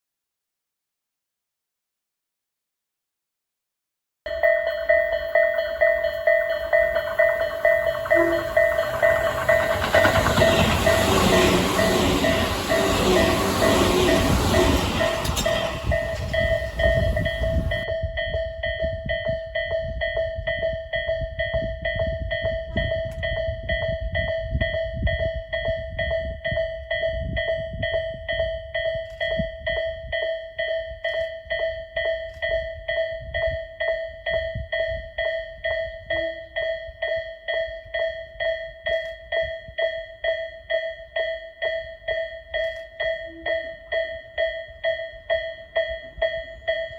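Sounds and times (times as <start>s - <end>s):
level-crossing bell ringing: 4.3s - 17.8s
train wheels rushing: 4.7s - 17.8s.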